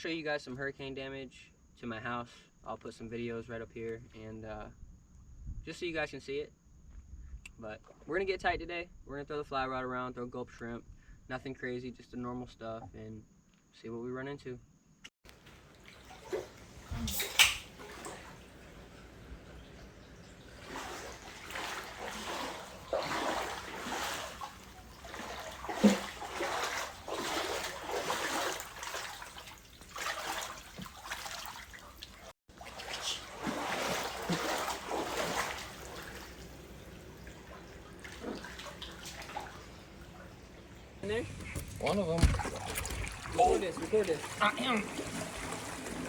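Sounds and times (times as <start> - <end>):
water splashing and sloshing: 15.3 - 46.0.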